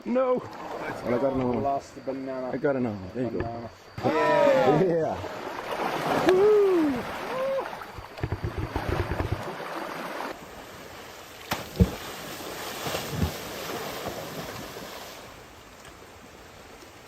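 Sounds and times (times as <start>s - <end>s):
rushing river water: 4.0s - 17.0s.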